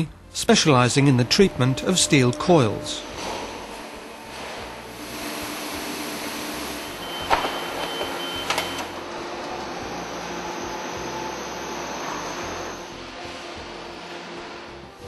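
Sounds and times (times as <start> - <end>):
industrial machinery humming: 0.0 - 15.0
high beeping tone: 6.8 - 8.9.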